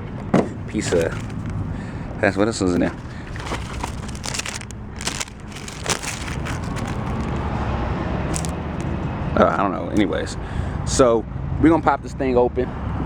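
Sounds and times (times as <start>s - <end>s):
packaging crinkling: 0.3s - 7.5s, 8.3s - 9.0s.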